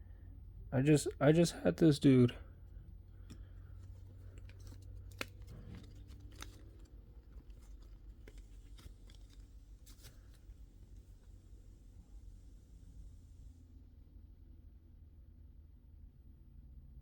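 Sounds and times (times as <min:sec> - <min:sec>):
cards and packaging rustling: 0:03.2 - 0:11.4.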